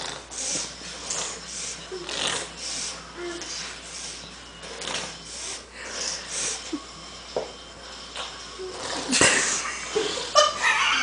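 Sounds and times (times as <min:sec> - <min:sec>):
person making fake farting noises: 0:02.0 - 0:02.6.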